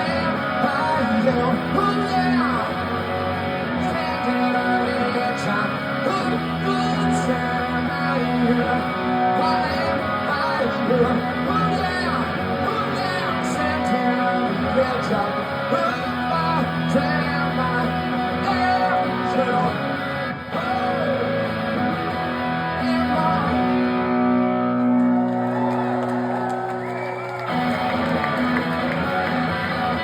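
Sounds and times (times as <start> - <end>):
rock guitar strummed hard: 0.0 - 25.2, 27.4 - 30.0.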